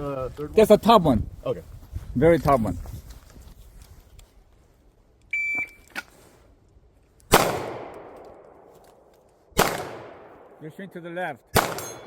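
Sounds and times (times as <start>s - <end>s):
shot timer beep: 5.3s - 5.9s
pistol shots echoing: 7.3s - 8.7s, 9.6s - 10.6s, 11.5s - 12.0s.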